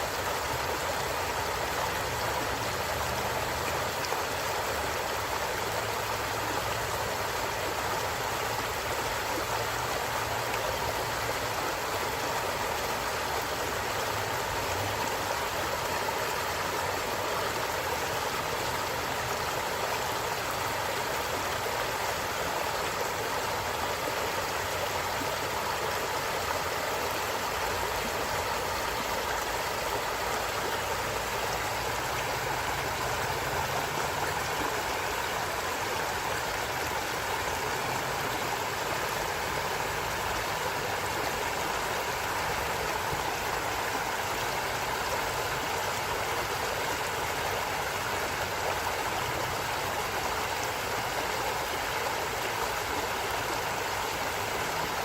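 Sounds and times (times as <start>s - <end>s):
stream water flowing: 0.0s - 55.0s.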